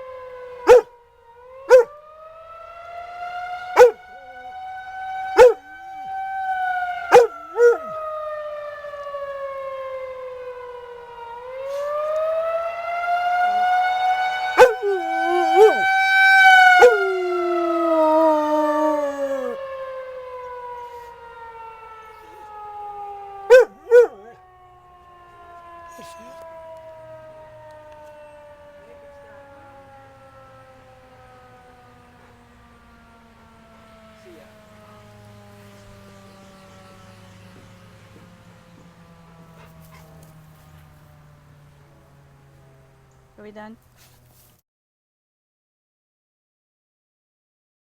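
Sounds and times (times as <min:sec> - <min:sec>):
warning siren wailing: 0:00.0 - 0:44.4
dog barking: 0:00.6 - 0:00.9, 0:01.7 - 0:01.9, 0:03.8 - 0:04.0, 0:05.4 - 0:05.6, 0:07.1 - 0:07.9, 0:14.6 - 0:15.9, 0:16.8 - 0:17.1, 0:23.5 - 0:24.4.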